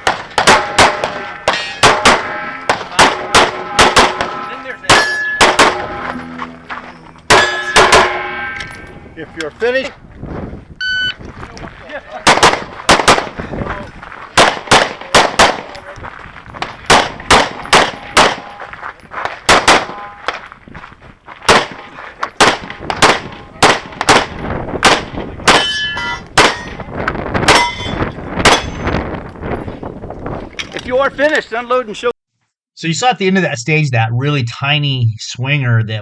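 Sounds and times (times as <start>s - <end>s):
pistol shots: 0.0s - 6.1s, 7.3s - 8.8s, 12.2s - 13.4s, 14.4s - 15.8s, 16.6s - 18.6s, 19.4s - 20.5s, 21.5s - 25.8s, 26.4s - 26.8s, 27.5s - 28.8s
steel targets ringing: 0.5s - 9.2s, 19.8s - 20.3s, 25.5s - 26.8s, 27.5s - 28.9s.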